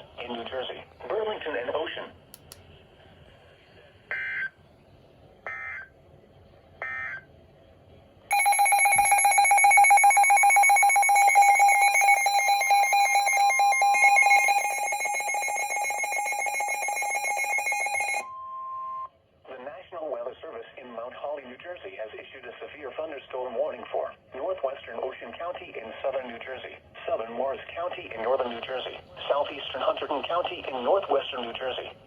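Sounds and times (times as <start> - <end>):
screeching digital data bursts: 8.3 - 18.2
rapidly pulsing alarm beep: 8.3 - 18.3.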